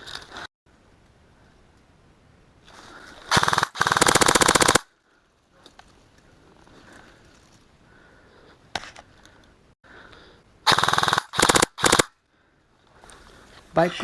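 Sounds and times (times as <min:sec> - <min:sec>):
airsoft rifle firing bursts: 0:03.3 - 0:04.9, 0:10.7 - 0:12.1.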